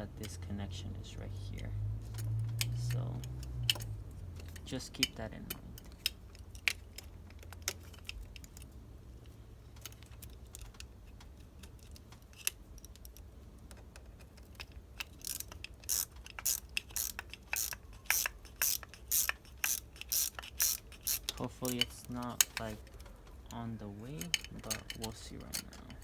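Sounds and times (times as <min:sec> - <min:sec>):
ratchet wrench clicking: 0:02.1 - 0:08.7, 0:14.4 - 0:22.7.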